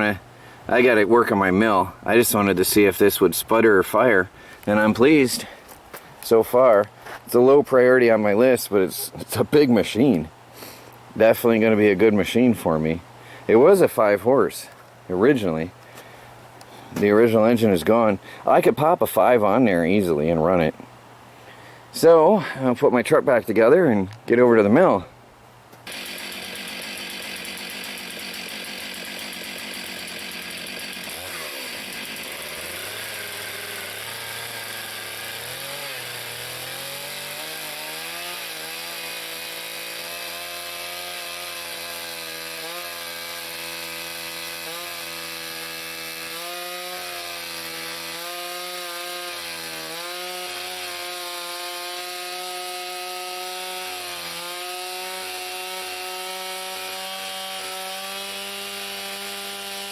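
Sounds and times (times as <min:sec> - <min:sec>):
chainsaw cutting a log: 0:25.8 - 0:59.9.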